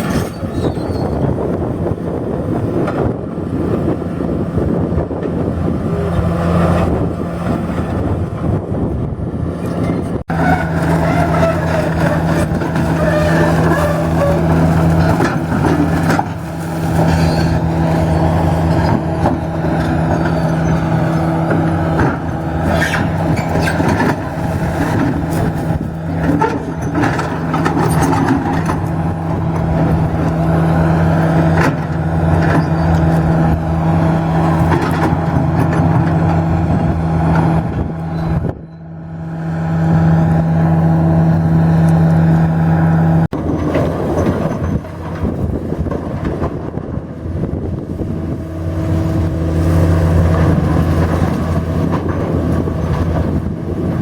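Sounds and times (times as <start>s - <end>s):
demolition machine engine running: 0.0s - 54.0s
rubble scraping and knocking: 9.8s - 37.9s, 47.7s - 54.0s.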